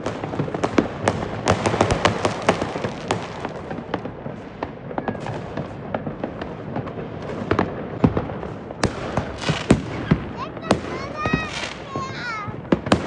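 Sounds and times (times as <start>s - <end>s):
fireworks and firecrackers crackling: 0.0s - 13.0s.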